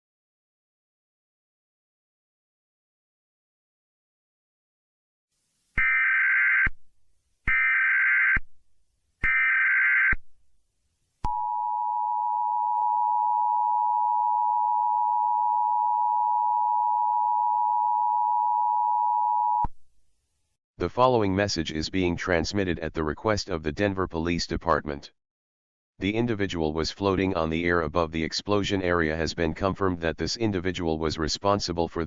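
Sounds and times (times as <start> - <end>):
rasping electronic squawk: 5.8 - 6.8, 7.5 - 8.4, 9.2 - 10.2.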